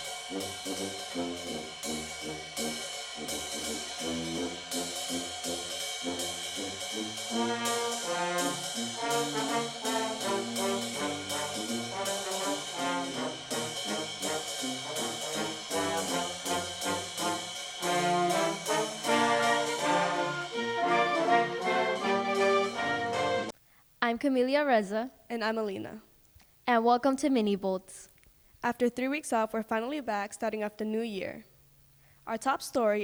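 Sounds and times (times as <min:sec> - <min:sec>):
brass section playing: 0:00.0 - 0:23.5
steady drum beat: 0:00.0 - 0:23.5.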